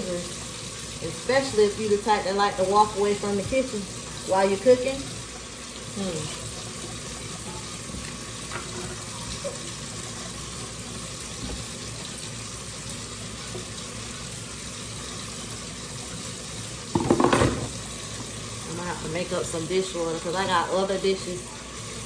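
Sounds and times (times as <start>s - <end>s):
tap running into sink: 7.4s - 9.4s, 16.9s - 18.4s.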